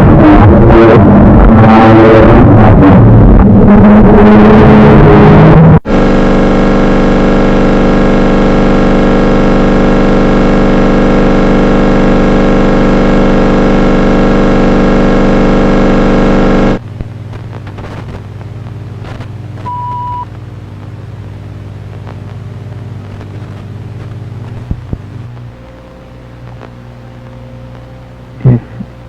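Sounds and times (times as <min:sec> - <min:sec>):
harsh electronic buzzing tone: 0:00.0 - 0:29.0
low hum: 0:00.0 - 0:29.0
short high beep: 0:19.7 - 0:20.2.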